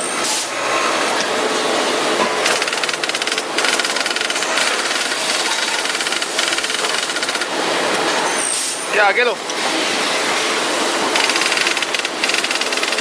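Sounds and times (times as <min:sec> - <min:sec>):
key cutting machine chatter: 0:02.4 - 0:07.6, 0:11.1 - 0:13.0.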